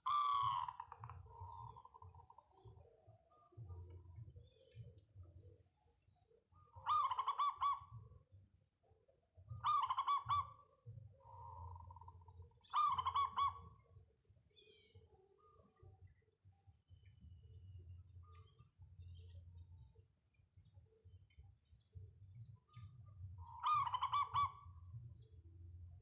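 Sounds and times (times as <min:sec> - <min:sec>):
dove cooing: 0:00.0 - 0:02.8, 0:06.6 - 0:08.2, 0:09.5 - 0:13.9, 0:23.4 - 0:24.9.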